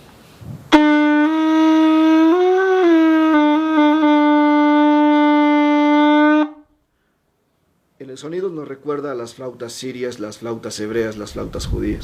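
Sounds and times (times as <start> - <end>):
horn long held note: 0.7 - 6.9.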